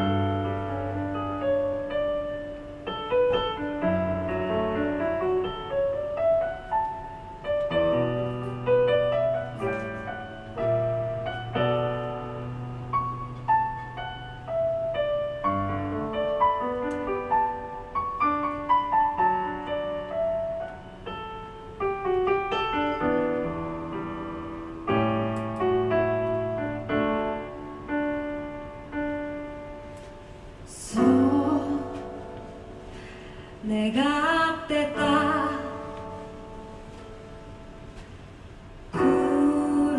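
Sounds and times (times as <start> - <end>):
piano playing: 0.0 - 39.9
woman singing with vibrato: 30.7 - 32.7, 33.6 - 36.0, 39.0 - 39.9.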